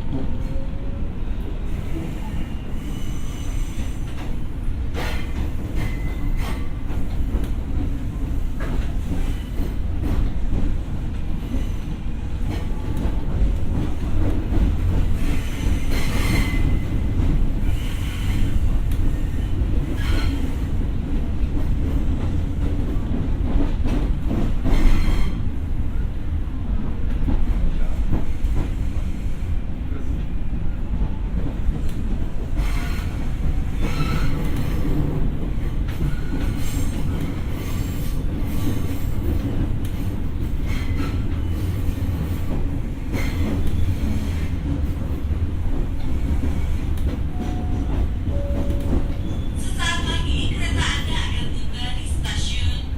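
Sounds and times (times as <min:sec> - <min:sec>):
train wheels rumbling on rail: 0:00.0 - 0:52.9
wheel squeal: 0:33.8 - 0:34.8.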